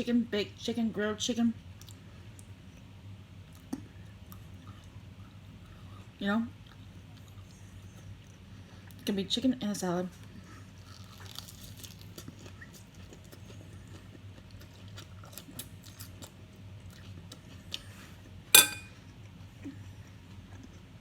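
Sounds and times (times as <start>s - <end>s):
person chewing: 10.8s - 17.9s.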